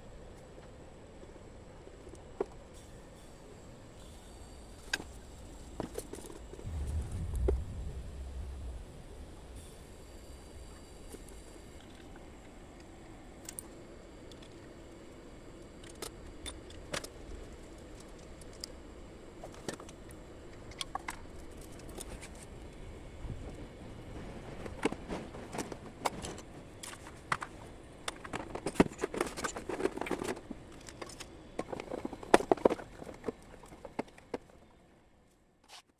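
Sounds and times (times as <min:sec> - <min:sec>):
faint steady hum: 0:00.0 - 0:25.3.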